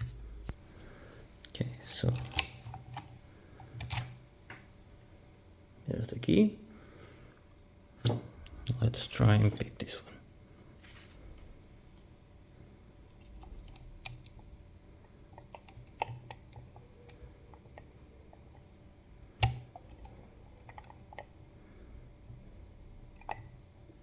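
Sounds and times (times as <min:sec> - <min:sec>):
lock pick clicking and scraping: 0:02.0 - 0:04.2, 0:13.1 - 0:14.5, 0:15.4 - 0:17.9, 0:19.4 - 0:21.3.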